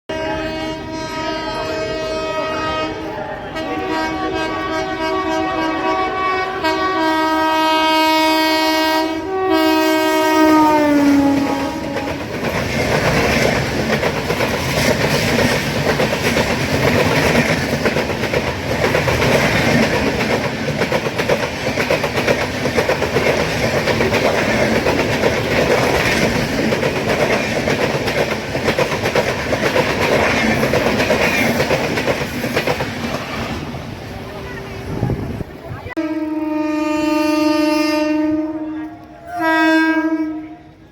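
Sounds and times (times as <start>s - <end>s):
train horn: 0.1s - 12.4s, 36.0s - 40.9s
train wheels clattering: 10.8s - 33.7s.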